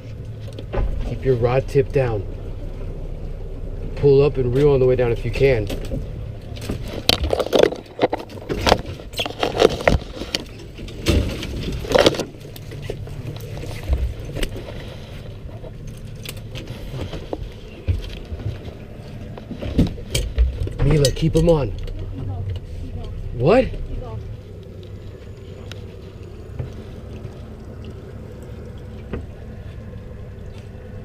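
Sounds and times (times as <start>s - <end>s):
steady low rumble: 0.0s - 31.0s
fishing gear knocks and clicks: 5.6s - 22.7s.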